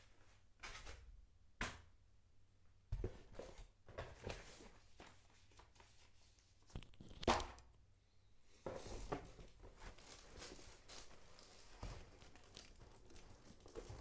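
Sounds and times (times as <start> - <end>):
packaging knocks and rustling: 8.8 - 14.0.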